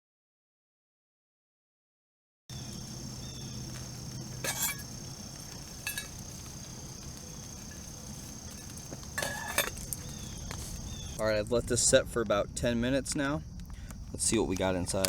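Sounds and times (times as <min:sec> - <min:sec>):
low background hum: 0:02.5 - 0:15.0
metallic clinks: 0:05.8 - 0:06.3.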